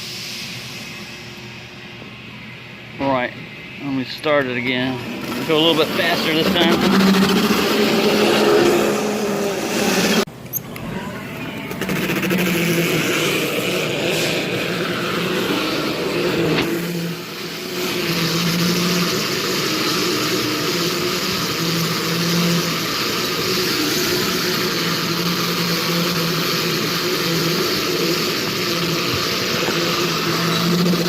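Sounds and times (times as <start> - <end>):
wrapping machine running: 4.8 - 10.3, 11.5 - 31.0.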